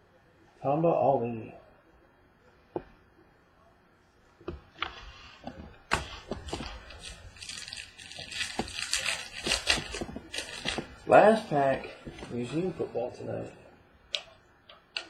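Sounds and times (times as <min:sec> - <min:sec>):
cards being handled: 0:04.8 - 0:11.1
foil wrapper crinkling and tearing: 0:06.0 - 0:11.0.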